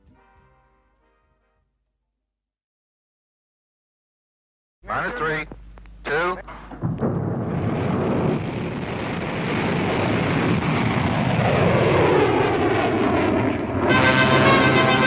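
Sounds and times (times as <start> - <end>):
brass-led music: 0.0 - 1.8, 13.8 - 15.0
rocket engine rushing: 6.5 - 15.0.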